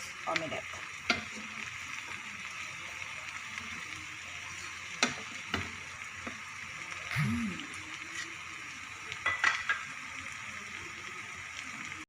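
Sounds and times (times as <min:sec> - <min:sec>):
omelette sizzling in a pan: 0:00.0 - 0:12.0.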